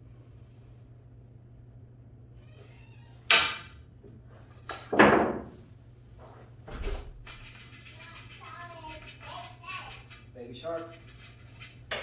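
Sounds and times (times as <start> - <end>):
pool cue striking ball: 4.8 - 5.6.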